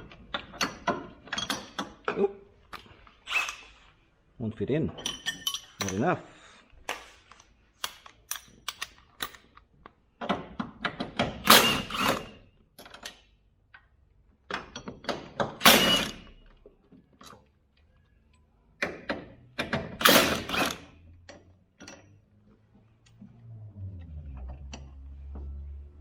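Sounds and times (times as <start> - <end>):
metal clicks and knocks: 7.8 - 11.4, 14.5 - 15.6.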